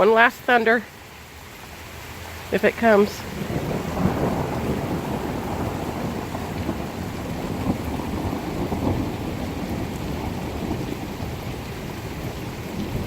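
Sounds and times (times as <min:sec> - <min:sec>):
steady rain: 0:00.0 - 0:13.0
thunder rumbling: 0:02.8 - 0:13.0.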